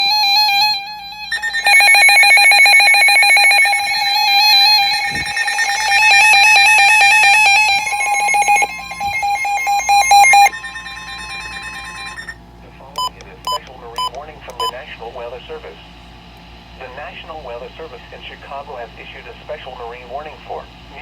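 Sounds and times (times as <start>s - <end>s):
rapidly pulsing alarm beep: 0.0s - 12.4s, 13.0s - 14.7s
faint steady warning tone: 0.0s - 14.8s
warbling data tones: 0.6s - 12.4s.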